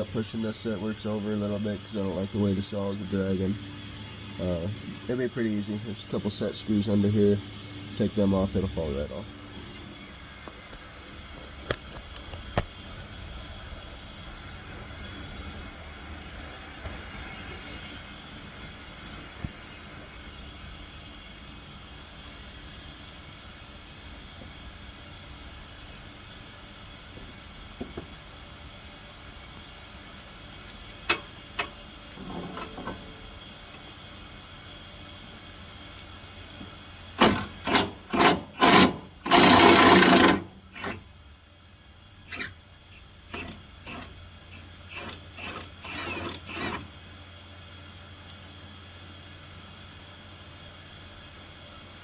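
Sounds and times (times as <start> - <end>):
steady hiss: 0.0 - 52.0
loud scraping strokes on metal: 31.1 - 33.3, 37.2 - 41.1, 42.2 - 42.6, 43.3 - 46.9.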